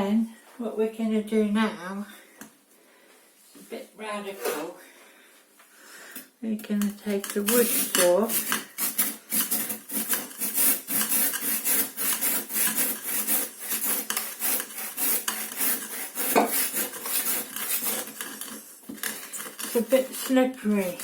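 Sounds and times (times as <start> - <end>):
hand saw cutting frozen food: 7.1 - 21.0.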